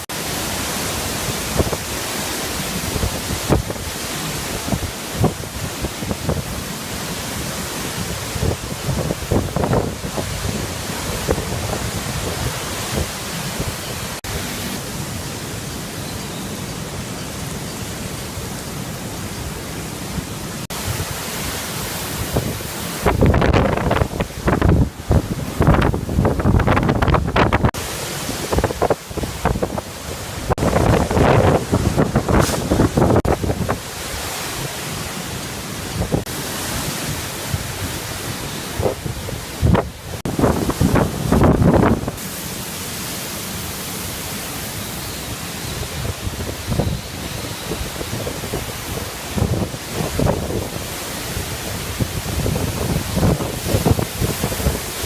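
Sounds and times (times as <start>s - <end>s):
heavy rain: 0.0s - 55.0s
strong wind: 0.0s - 55.0s.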